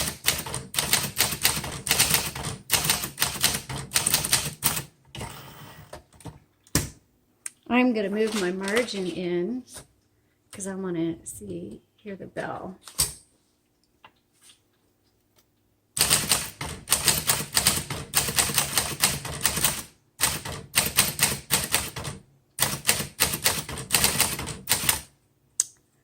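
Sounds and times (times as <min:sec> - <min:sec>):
manual typewriter keystrokes: 0:00.0 - 0:07.0, 0:16.0 - 0:25.1.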